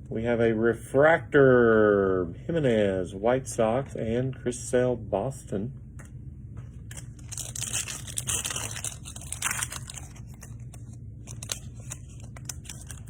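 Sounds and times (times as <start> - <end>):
foil pack torn and crinkled: 6.9 - 13.0.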